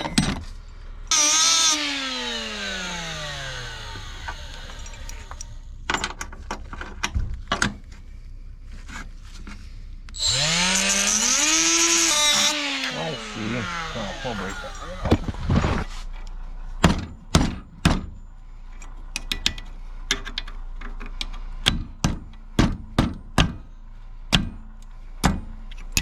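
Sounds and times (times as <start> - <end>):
power tool motor whining: 1.1 - 5.6, 10.2 - 16.0.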